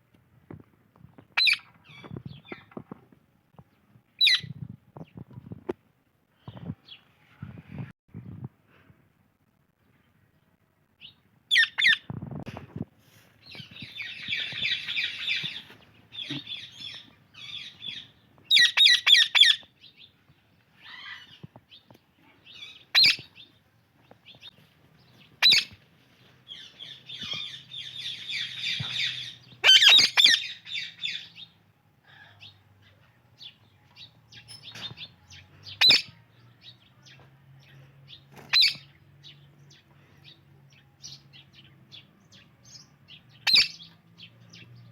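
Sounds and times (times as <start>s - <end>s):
parakeets chirping and chattering: 13.5s - 19.7s, 22.4s - 23.4s, 24.2s - 25.8s, 26.5s - 31.5s, 33.4s - 41.4s, 43.1s - 44.7s.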